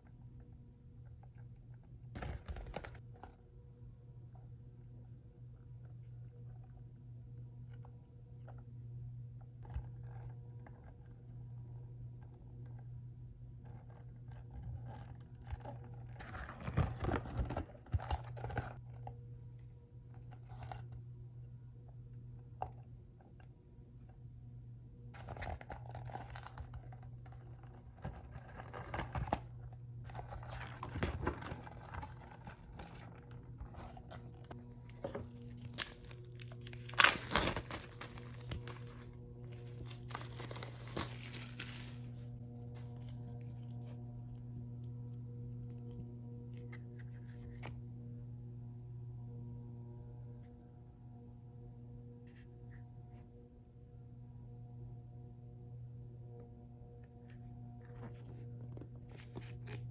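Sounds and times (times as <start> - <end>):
steady low hum: 0.0 - 59.9
packaging rustling and tearing: 16.1 - 18.8, 30.1 - 42.1.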